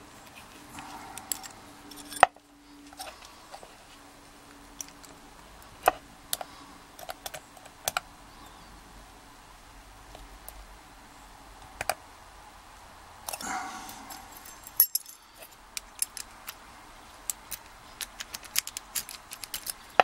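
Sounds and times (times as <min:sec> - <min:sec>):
metal tools clicking on padlock: 0:00.8 - 0:03.1, 0:13.2 - 0:16.6, 0:17.2 - 0:20.0.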